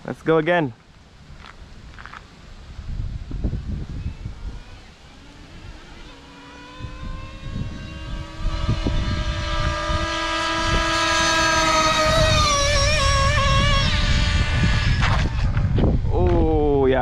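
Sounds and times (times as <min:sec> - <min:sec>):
model car engine at high revs: 0:04.6 - 0:15.5.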